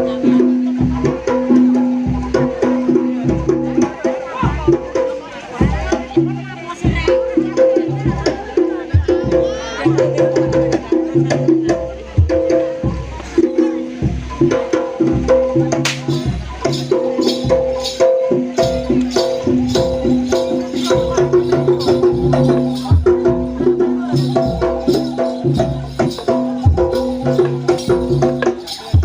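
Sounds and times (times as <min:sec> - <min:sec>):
low drum strokes: 0:00.0 - 0:29.0
metallophones and gongs ringing: 0:13.4 - 0:29.0.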